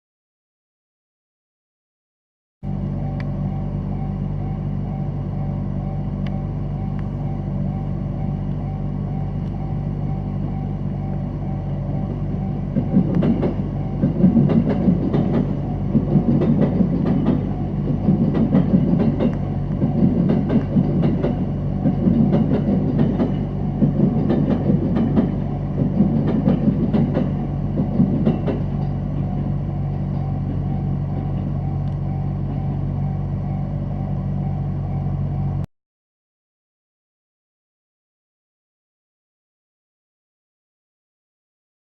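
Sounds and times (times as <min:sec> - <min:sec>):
train wheels clacking over rails: 0:12.0 - 0:32.8.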